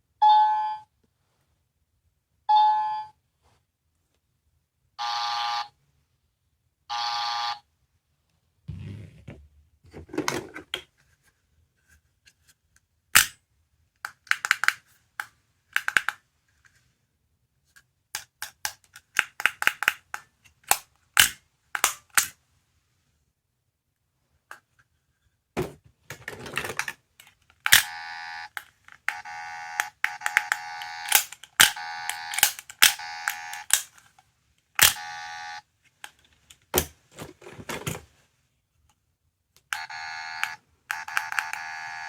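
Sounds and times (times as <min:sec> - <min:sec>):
toy button clicks: 0:27.7 - 0:33.9, 0:34.8 - 0:35.1, 0:39.7 - 0:41.7.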